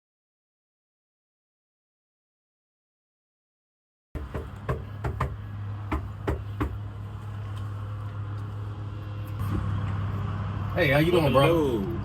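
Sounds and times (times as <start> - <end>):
vehicle engine humming: 4.2 - 12.0.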